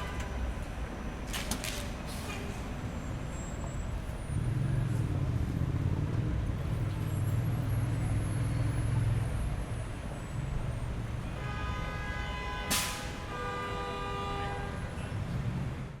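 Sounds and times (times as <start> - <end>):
car horns honking: 0.0 - 0.6, 11.3 - 15.0
heavy vehicle engine rumbling: 0.0 - 16.0.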